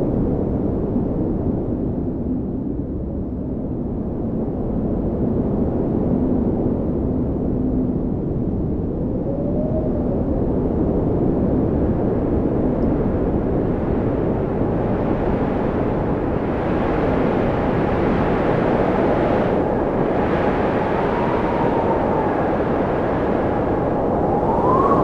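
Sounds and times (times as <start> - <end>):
gusting wind on microphone: 0.0 - 25.0
faint wind whistle: 7.0 - 12.0, 18.2 - 25.0.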